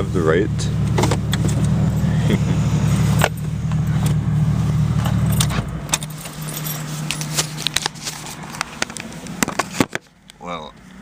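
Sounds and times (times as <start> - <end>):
car engine rumbling: 0.0 - 11.0
keys jangling: 5.0 - 8.0.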